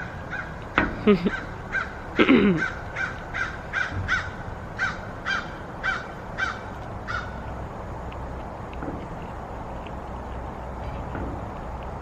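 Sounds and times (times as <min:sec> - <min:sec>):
low background hum: 0:00.0 - 0:12.0
crow cawing: 0:00.3 - 0:00.6, 0:01.3 - 0:07.4.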